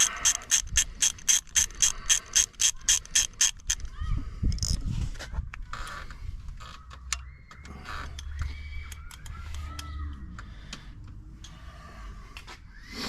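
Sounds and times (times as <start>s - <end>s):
hand tools clicking and knocking: 0.0s - 3.9s.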